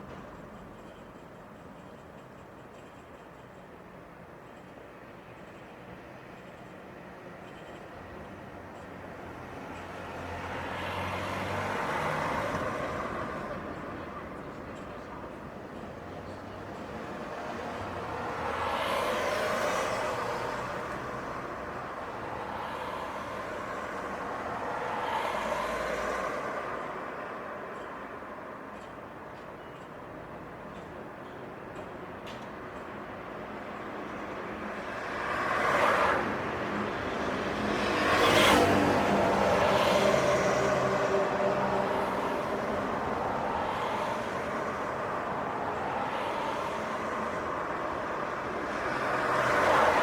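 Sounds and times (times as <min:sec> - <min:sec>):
background traffic: 0:03.6 - 0:50.0
cars passing: 0:09.2 - 0:28.4, 0:33.4 - 0:50.0.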